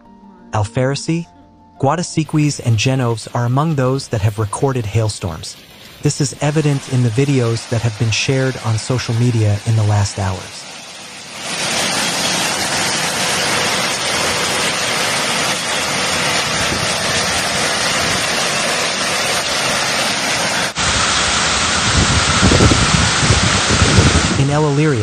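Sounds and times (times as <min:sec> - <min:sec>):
hail and rain downpour: 0:02.4 - 0:25.0
low rumbling from wind gusts: 0:12.1 - 0:25.0.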